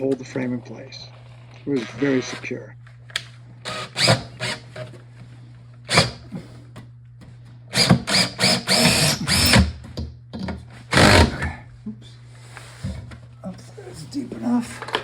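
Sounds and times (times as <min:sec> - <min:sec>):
power drill boring into brick: 0:03.7 - 0:04.7, 0:05.9 - 0:06.2, 0:07.7 - 0:09.7, 0:10.9 - 0:11.4.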